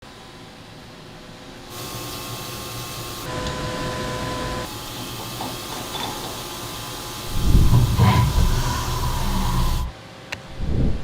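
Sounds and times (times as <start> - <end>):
grinding machine hiss: 1.7 - 10.0
grinding machine whine: 1.7 - 10.0.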